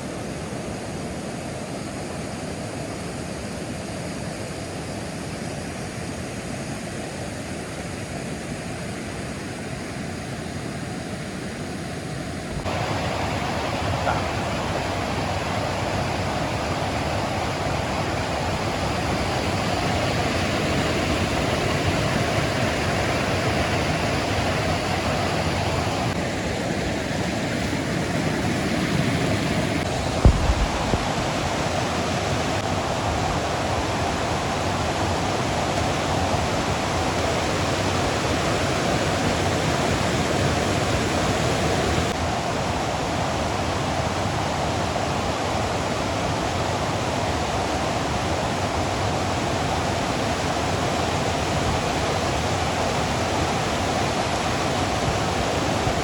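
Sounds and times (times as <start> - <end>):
waterfall rushing: 12.6 - 26.2, 28.2 - 42.1
low thump: 30.2 - 31.5.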